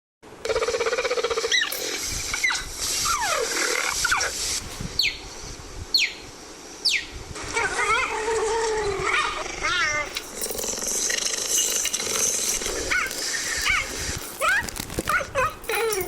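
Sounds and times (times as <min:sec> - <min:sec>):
leopard calls: 0:00.5 - 0:04.4, 0:07.5 - 0:16.0.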